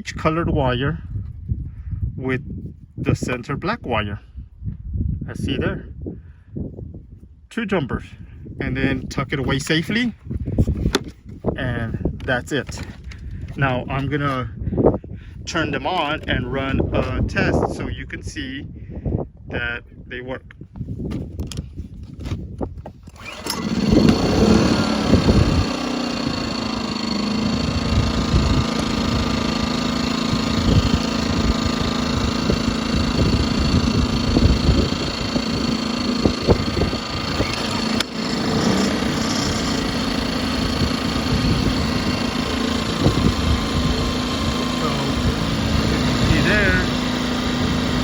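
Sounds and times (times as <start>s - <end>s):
small generator engine running: 23.1s - 48.0s.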